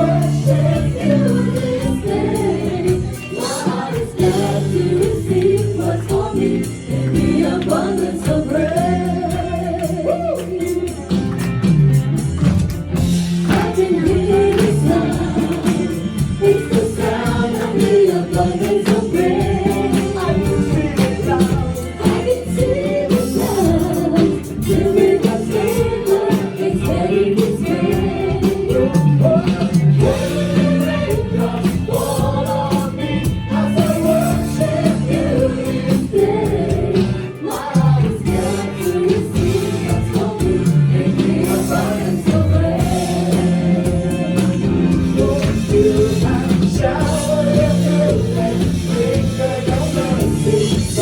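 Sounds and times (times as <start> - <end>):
voices singing together: 0.0 - 12.3, 12.9 - 51.0
band playing gospel music: 0.0 - 51.0.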